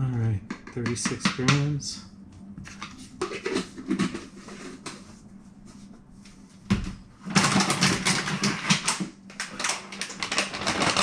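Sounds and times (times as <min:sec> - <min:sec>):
packaging clicking and rustling: 0:07.3 - 0:11.0.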